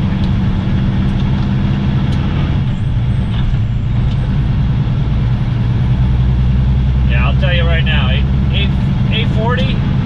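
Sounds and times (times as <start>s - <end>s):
diesel engine drone: 0.0s - 10.0s
road noise: 0.0s - 10.0s.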